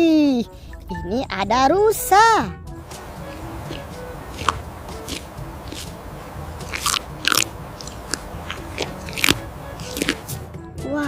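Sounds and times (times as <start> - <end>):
crunches and clicks of mud: 2.8 - 10.5.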